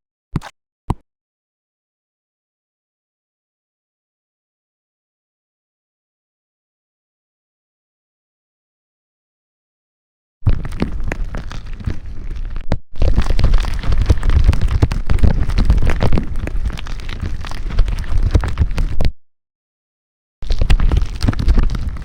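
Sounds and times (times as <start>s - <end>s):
slime squishing and crackling: 10.5s - 19.1s, 20.4s - 22.0s.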